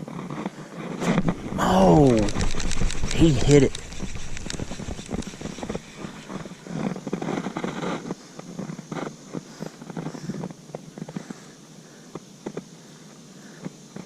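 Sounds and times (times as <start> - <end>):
rod and line handling: 1.0 - 7.5
fishing reel clicking: 1.9 - 6.4.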